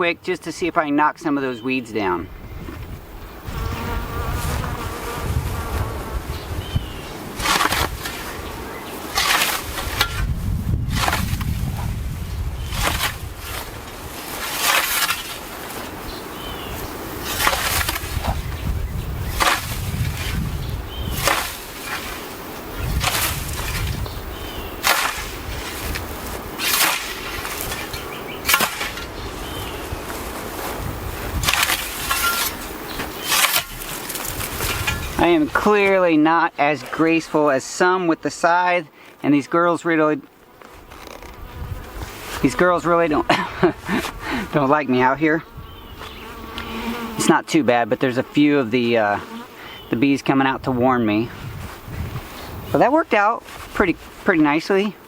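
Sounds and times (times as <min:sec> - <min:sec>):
bees buzzing: 0:03.0 - 0:10.0, 0:12.5 - 0:38.5, 0:39.2 - 0:52.8
scythe swishing through grass: 0:07.3 - 0:08.4, 0:09.0 - 0:11.6, 0:12.7 - 0:16.0, 0:17.1 - 0:18.4, 0:19.2 - 0:24.0, 0:24.8 - 0:35.2.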